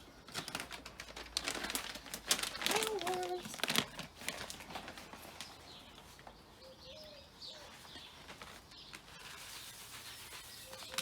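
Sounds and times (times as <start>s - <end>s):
birds chirping: 5.2s - 11.0s
low steady bird call: 5.3s - 11.0s.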